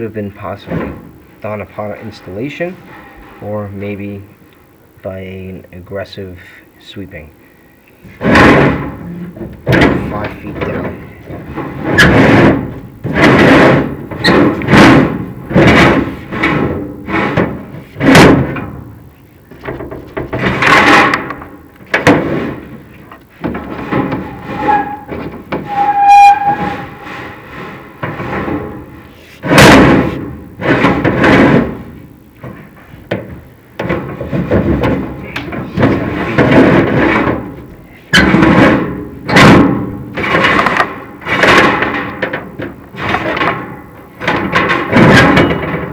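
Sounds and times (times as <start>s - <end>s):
rod knocking and scraping on metal flue: 23.4s - 28.6s.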